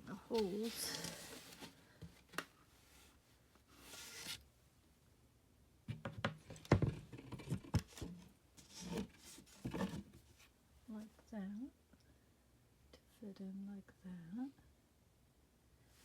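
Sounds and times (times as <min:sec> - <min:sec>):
scraping rustle of furniture parts: 0:00.3 - 0:04.4.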